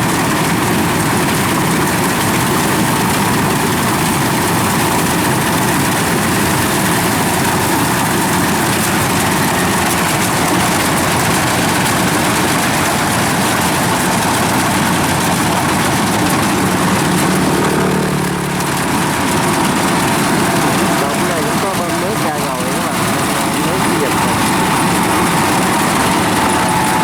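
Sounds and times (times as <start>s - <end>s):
diesel engine running: 0.0s - 27.0s.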